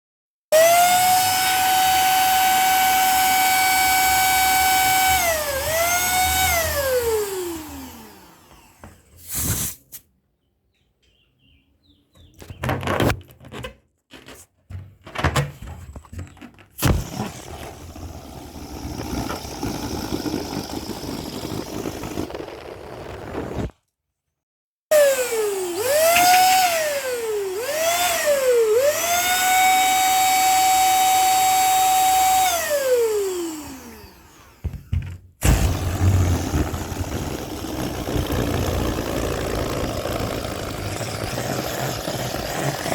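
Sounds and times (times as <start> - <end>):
electric pump whining: 0.6 - 9.1, 16.8 - 23.7, 24.9 - 42.9.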